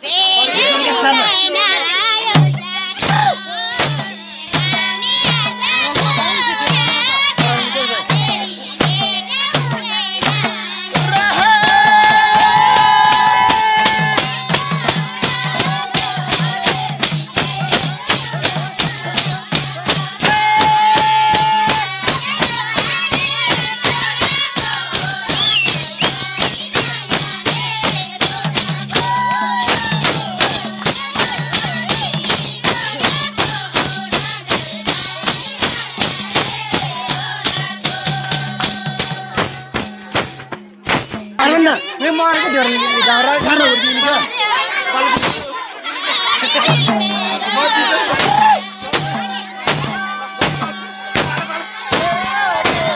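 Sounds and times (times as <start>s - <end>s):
person singing folk song: 0.0s - 40.5s, 41.3s - 52.9s
fast steady percussion beat: 0.1s - 52.9s.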